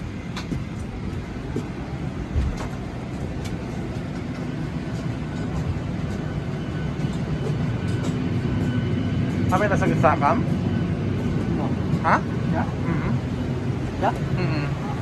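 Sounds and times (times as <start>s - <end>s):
airplane cabin rumble: 0.0s - 15.0s.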